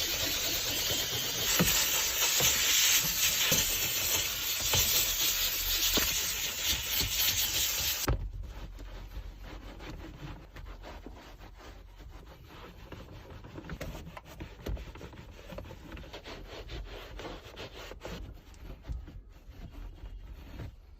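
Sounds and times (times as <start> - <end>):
spraying air hiss: 0.0 - 8.1
rubbing and scrubbing on surface: 0.0 - 20.9.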